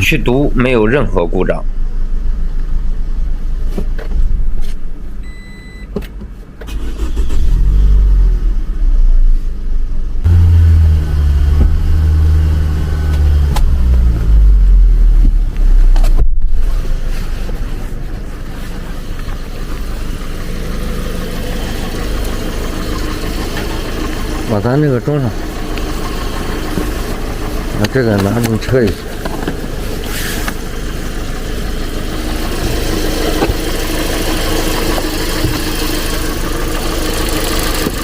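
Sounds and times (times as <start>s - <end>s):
car engine revving and idling: 6.6s - 38.0s.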